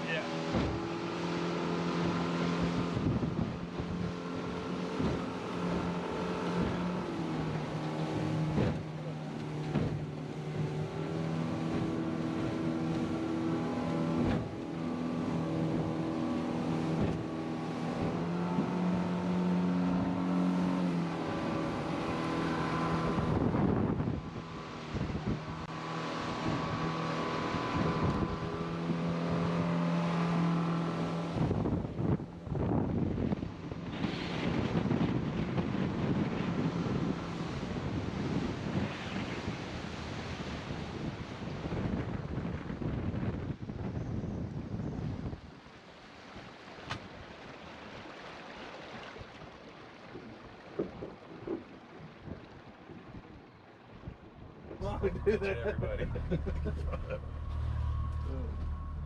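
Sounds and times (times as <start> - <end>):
boat knocking in waves: 0.0 - 43.8, 46.0 - 59.0
boat motor running: 0.0 - 45.4, 54.0 - 59.0
wind buffeting microphone: 0.4 - 29.8, 30.5 - 45.7.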